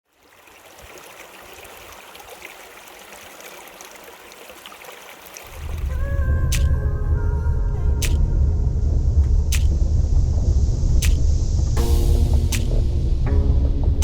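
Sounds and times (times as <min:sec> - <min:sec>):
river water flowing: 0:00.0 - 0:06.9
loud low rumble: 0:05.5 - 0:14.0.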